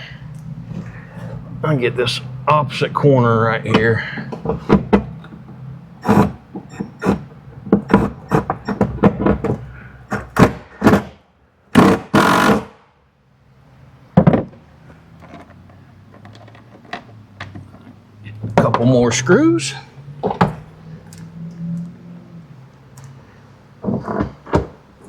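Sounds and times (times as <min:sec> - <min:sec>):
small metal clicks and knocks: 0:15.2 - 0:18.6.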